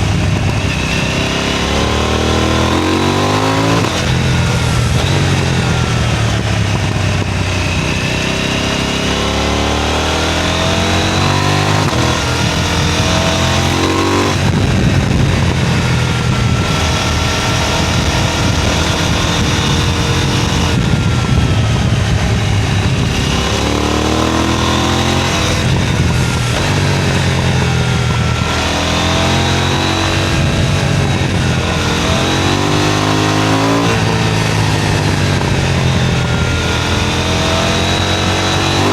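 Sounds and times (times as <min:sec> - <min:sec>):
motorcycle engine revving through gears: 0:00.0 - 0:38.9.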